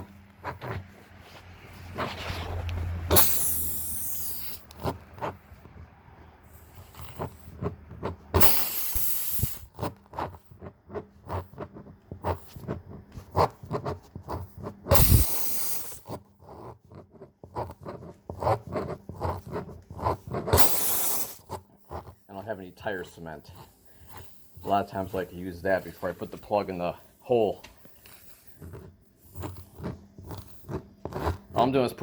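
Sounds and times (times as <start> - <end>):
reamer tool scraping in tire: 0.0 - 32.0
air hissing: 2.4 - 4.8, 8.4 - 9.8, 14.9 - 16.1, 20.5 - 21.5.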